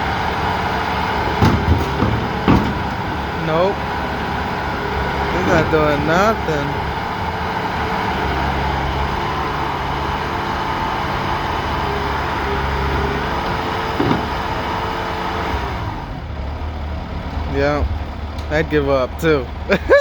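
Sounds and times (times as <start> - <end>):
skid steer engine under load: 0.0 - 20.0.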